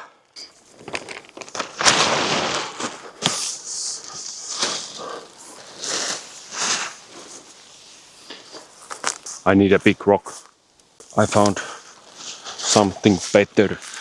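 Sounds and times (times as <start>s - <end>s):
tarp rustling and crackling: 0.6s - 14.0s
tarp snapping sharply: 0.8s - 5.2s.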